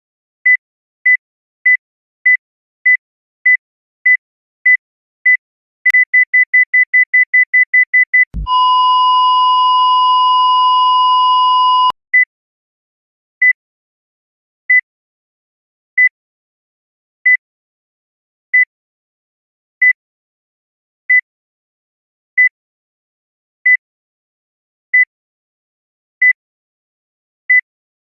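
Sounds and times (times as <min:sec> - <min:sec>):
heart monitor beeps: 0:00.5 - 0:12.3.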